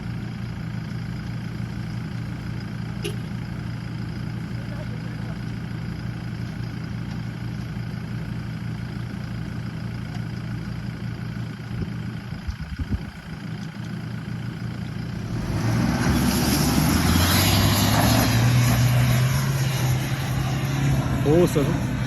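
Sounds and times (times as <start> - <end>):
pickup engine revving: 15.1 - 22.0.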